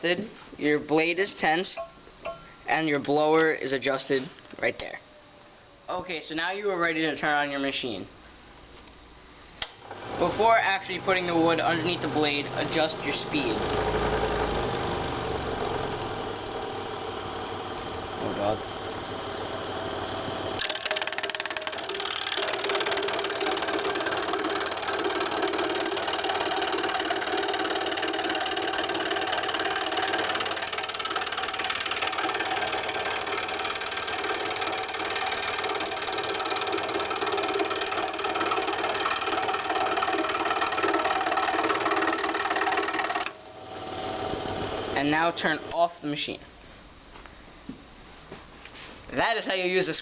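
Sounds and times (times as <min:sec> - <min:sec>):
scroll saw cutting wood: 0:20.6 - 0:45.7.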